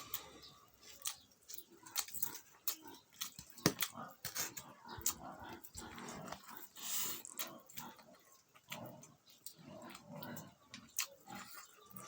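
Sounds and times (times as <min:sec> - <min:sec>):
chewing and lip-smacking: 0:00.0 - 0:12.0.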